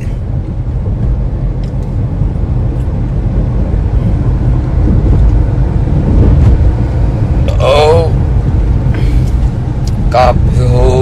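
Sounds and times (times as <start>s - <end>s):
vehicle engine and road rumble: 0.0s - 11.0s
wind on microphone: 2.4s - 7.5s.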